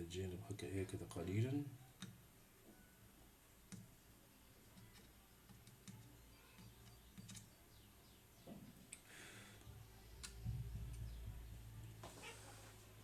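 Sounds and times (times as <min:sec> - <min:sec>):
faint clicks: 0:10.2 - 0:11.0.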